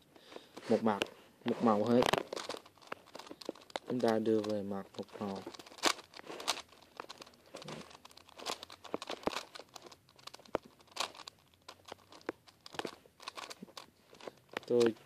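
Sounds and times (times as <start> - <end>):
puzzle cube clicking and scraping: 0.0 - 15.0.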